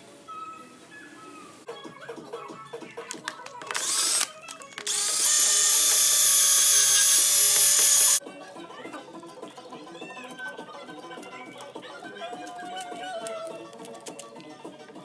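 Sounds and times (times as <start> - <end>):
electric drill whirring: 3.6 - 8.2.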